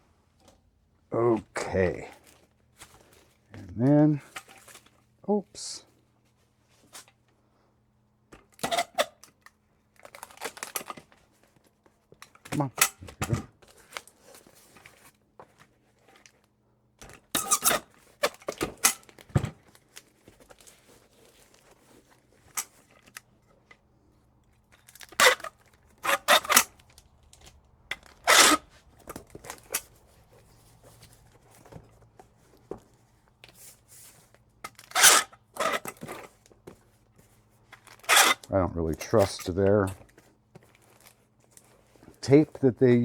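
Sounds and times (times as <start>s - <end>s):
crinkling and handling noise: 0.0s - 7.7s, 8.3s - 43.0s
packing tape tearing off roll: 8.5s - 11.3s, 17.0s - 23.3s, 24.8s - 30.0s, 34.7s - 36.5s, 37.7s - 41.7s.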